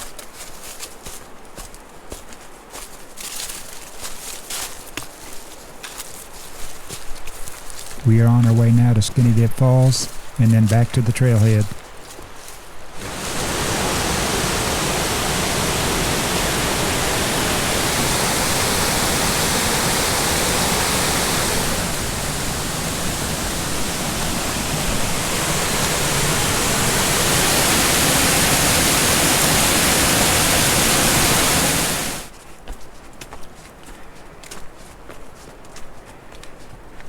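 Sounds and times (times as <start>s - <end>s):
waterfall rushing: 13.0s - 32.3s.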